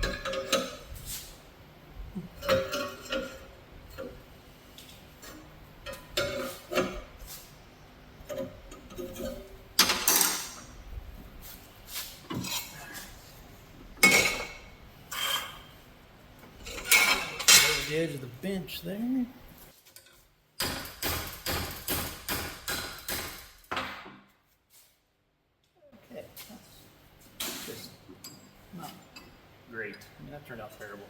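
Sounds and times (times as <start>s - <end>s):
loud metal clanging scrapes: 14.1s - 15.8s
steel plate clinking and scraping: 15.1s - 15.8s.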